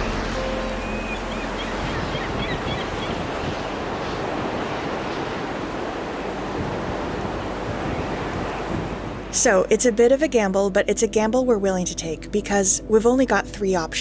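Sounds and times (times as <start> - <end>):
sea water washing and rushing: 0.0 - 10.0
wind buffeting microphone: 0.0 - 11.2.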